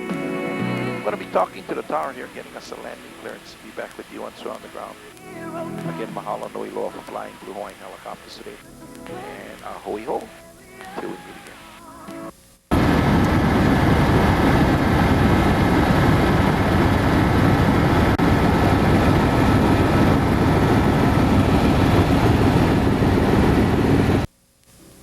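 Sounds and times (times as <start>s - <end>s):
faint high whine: 0.0s - 25.0s
helicopter engine and rotor: 12.8s - 24.2s.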